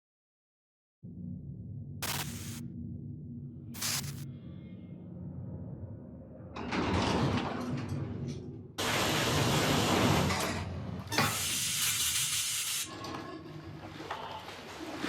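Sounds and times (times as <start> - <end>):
low underwater rumble: 1.0 - 8.8.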